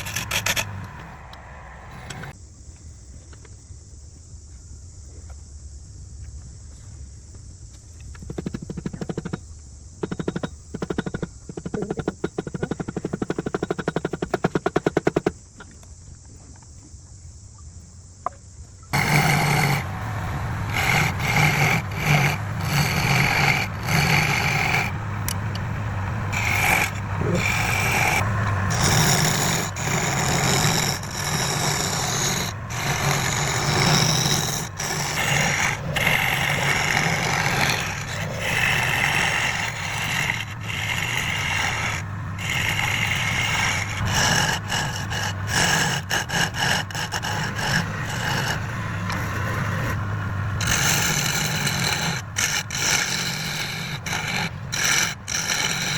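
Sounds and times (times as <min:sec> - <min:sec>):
turning tool scraping wood: 0:00.0 - 0:01.2, 0:08.1 - 0:15.7, 0:19.0 - 0:55.9
rapid even ticking: 0:08.2 - 0:15.6, 0:18.9 - 0:55.9.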